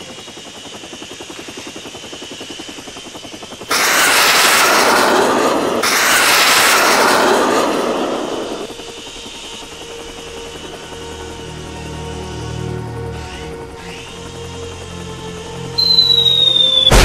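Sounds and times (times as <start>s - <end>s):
helicopter rotor chop: 0.0s - 17.0s
loud rushing roar: 3.7s - 8.8s.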